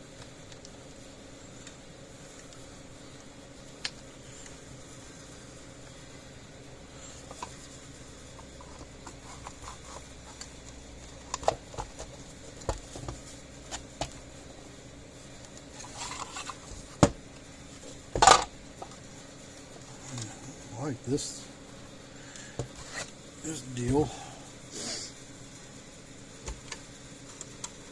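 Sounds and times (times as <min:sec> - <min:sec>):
clicks and rustles of plastic parts: 0:08.4 - 0:14.2, 0:15.4 - 0:17.1, 0:17.8 - 0:19.0.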